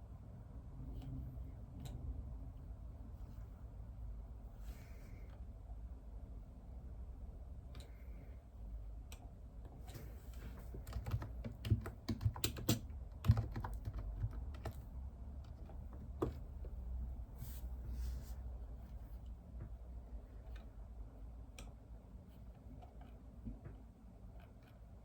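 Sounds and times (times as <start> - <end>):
typing on computer keyboard: 10.7 - 16.4.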